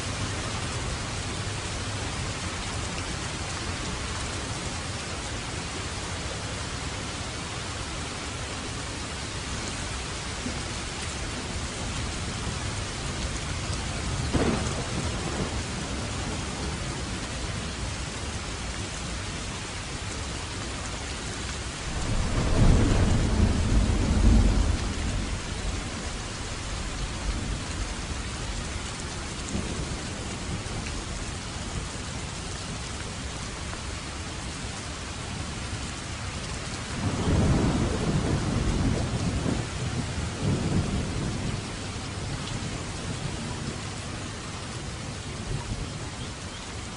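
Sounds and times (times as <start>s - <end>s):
steady rain falling: 0.0s - 46.9s
thunder: 14.2s - 16.8s, 21.8s - 27.8s, 37.0s - 41.6s.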